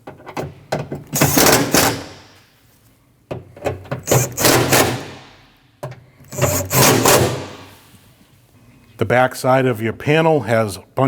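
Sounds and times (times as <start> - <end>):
power tool tightening screws: 1.1 - 2.2, 4.0 - 5.3, 6.3 - 7.7.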